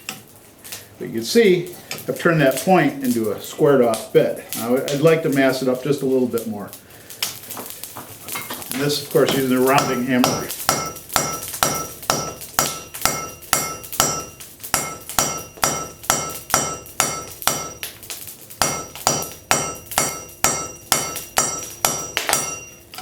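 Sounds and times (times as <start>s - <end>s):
hammer striking metal on anvil: 9.2s - 18.0s, 18.6s - 23.0s.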